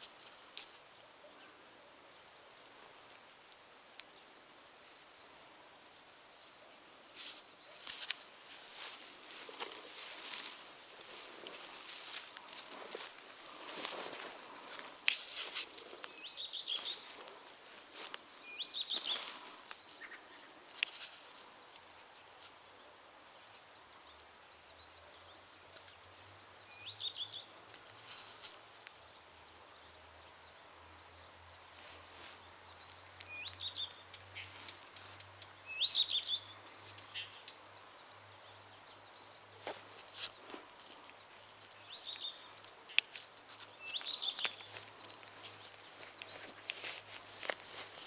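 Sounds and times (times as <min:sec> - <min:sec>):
songbird singing: 0:00.0 - 0:48.0
rustles or steps: 0:07.1 - 0:21.4, 0:39.6 - 0:48.0.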